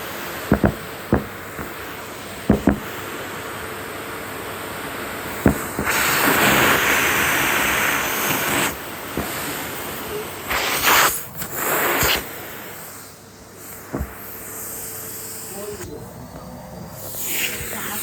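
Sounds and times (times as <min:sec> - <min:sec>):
vacuum cleaner running: 0:00.0 - 0:18.0
sharp knock: 0:00.5 - 0:01.7, 0:02.5 - 0:02.9, 0:05.4 - 0:06.0, 0:13.9 - 0:14.1.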